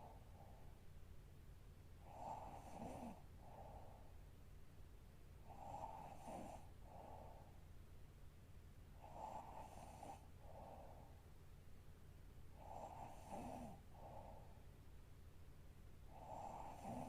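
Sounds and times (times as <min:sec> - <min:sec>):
woman snoring faintly: 0:16.2 - 0:17.0.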